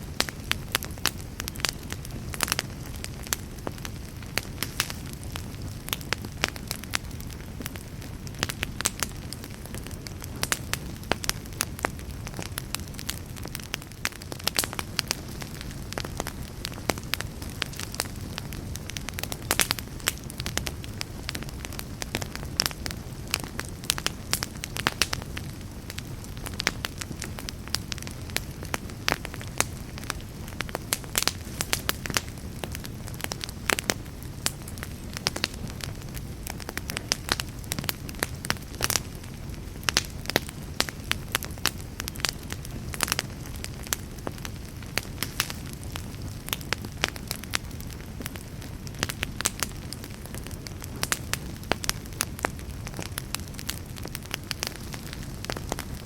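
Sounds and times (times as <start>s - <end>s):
wood fire crackling: 0.0s - 56.0s.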